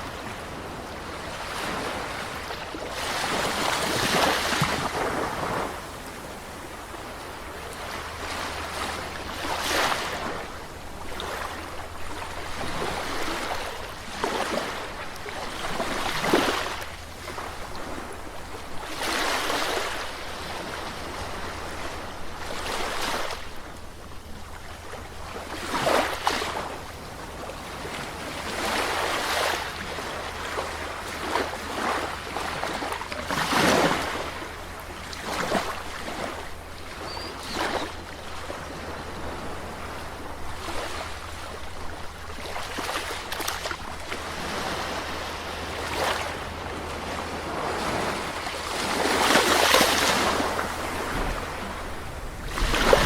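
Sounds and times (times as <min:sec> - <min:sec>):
sea waves breaking on shore: 0:00.0 - 0:53.0
steady low rumble: 0:50.8 - 0:53.0.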